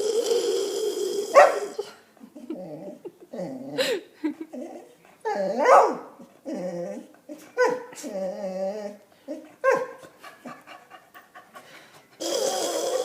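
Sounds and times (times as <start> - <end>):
person's wavering vocal noises: 0.0 - 1.8
dog whimpering and panting: 10.2 - 12.2
loud breathy sound: 11.6 - 13.0.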